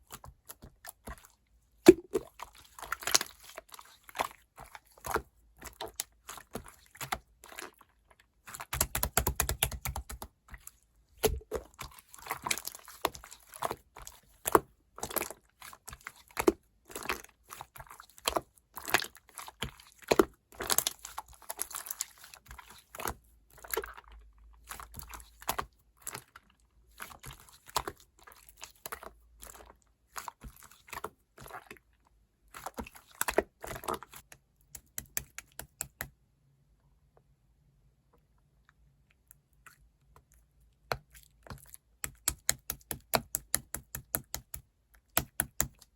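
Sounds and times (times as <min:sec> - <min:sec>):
slime squishing with sticky pops: 0:00.0 - 0:24.0, 0:32.5 - 0:36.2, 0:38.7 - 0:45.9.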